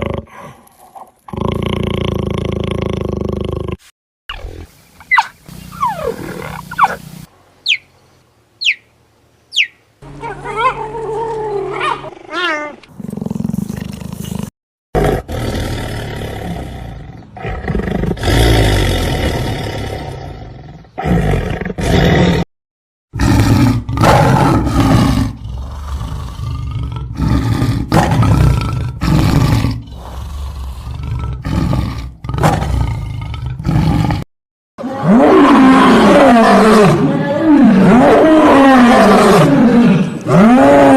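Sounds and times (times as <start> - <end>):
big cats roaring: 23.2 - 34.2, 34.8 - 40.9.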